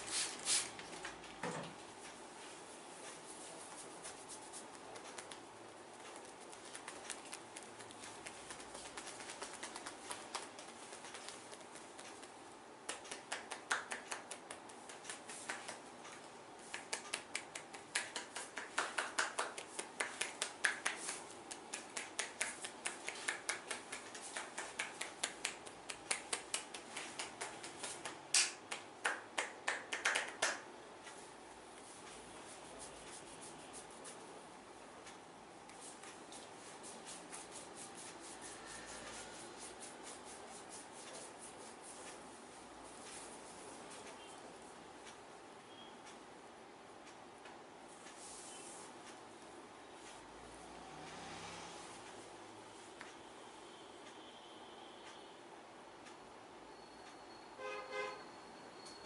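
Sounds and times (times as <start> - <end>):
hands slapping during massage: 3.7 - 15.8, 16.6 - 30.7, 35.8 - 42.1.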